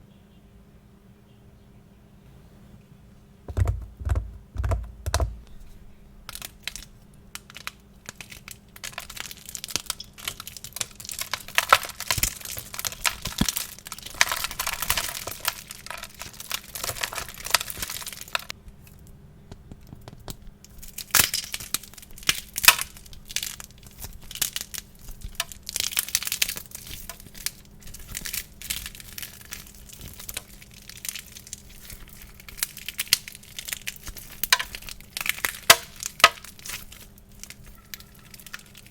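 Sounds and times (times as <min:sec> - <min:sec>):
dull thumps: 0:03.5 - 0:06.0
wax cracking and crackling: 0:03.5 - 0:38.9.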